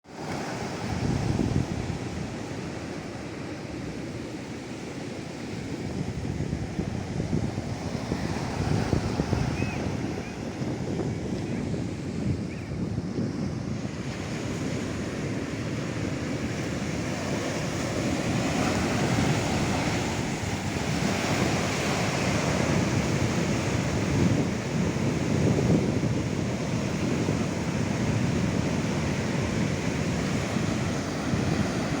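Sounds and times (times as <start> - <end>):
wind buffeting microphone: 0.2 - 32.0.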